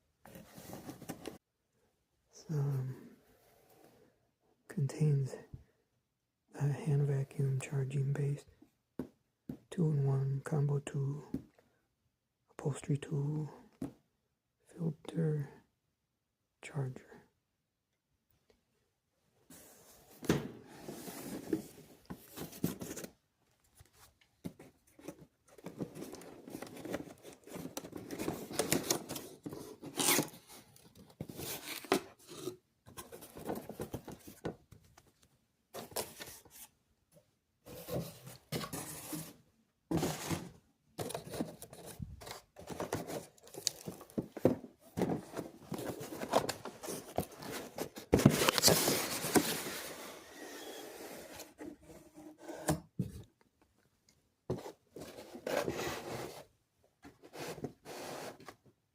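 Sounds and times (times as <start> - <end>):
packaging rustling and crinkling: 41.0 - 49.9.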